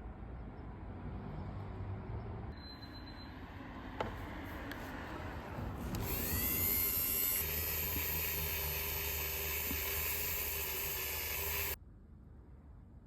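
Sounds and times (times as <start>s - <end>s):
electric power tool whining: 5.8s - 11.8s.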